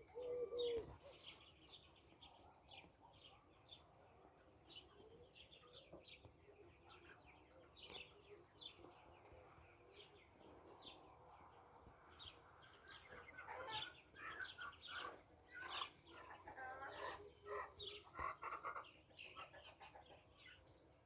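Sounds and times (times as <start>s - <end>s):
small birds chirping: 0.0s - 21.0s
chickens clucking: 12.7s - 20.4s.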